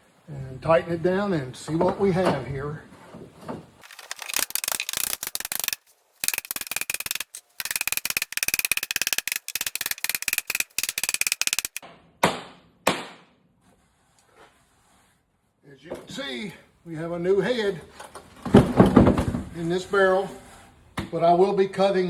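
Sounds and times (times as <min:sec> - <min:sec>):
rapid ratcheting clicks: 0:03.8 - 0:11.8
sharp knocks: 0:11.6 - 0:13.3.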